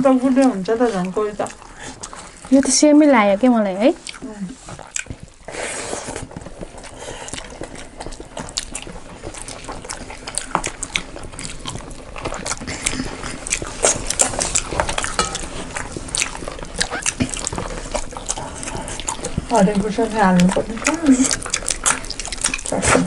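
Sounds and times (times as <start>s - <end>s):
chewing: 0.0s - 23.0s
wet squelching of rice mixing: 0.0s - 23.0s.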